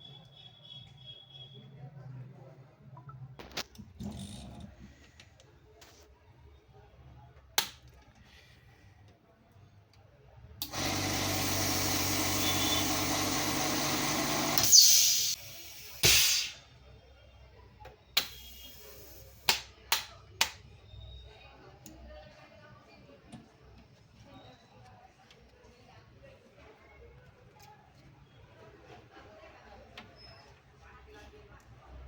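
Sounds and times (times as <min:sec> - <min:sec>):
small machine motor running: 0:10.6 - 0:15.8
short hissing bursts: 0:14.6 - 0:16.6.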